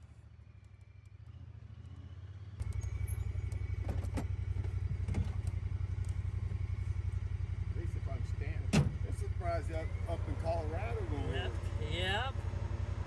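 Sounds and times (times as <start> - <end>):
utility vehicle engine running: 0.0 - 13.0.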